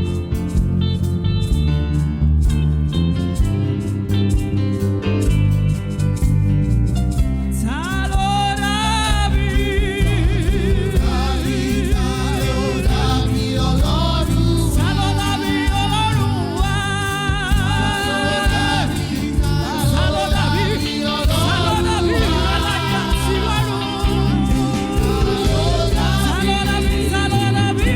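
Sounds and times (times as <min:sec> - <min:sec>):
bass-heavy band accompaniment: 0:00.0 - 0:27.9
gospel singing with vibrato: 0:07.5 - 0:27.9.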